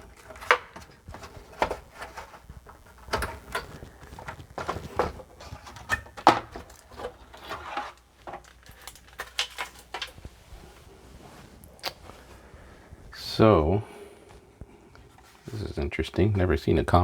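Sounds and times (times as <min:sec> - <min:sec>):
hands handling plastic case: 0:00.0 - 0:12.3.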